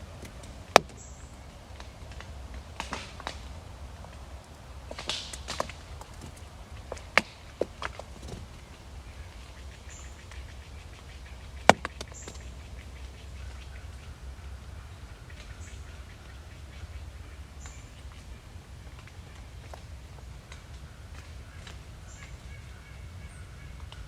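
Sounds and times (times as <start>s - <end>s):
sharp clicks or knocks: 0.2s - 1.0s, 11.7s - 12.4s.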